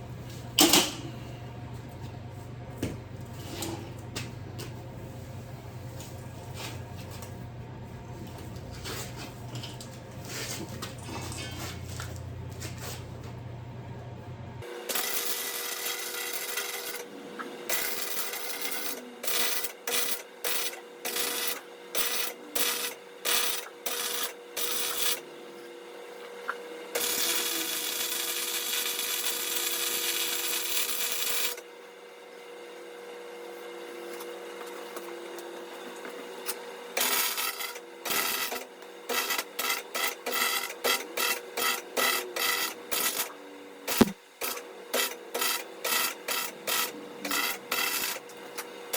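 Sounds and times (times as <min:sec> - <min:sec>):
steady hum: 0:00.0 - 0:14.7.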